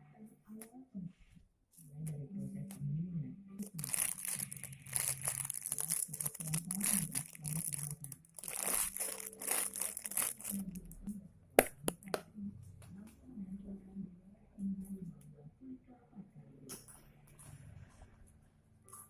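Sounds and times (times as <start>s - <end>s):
plastic packaging crinkling: 3.6s - 11.1s.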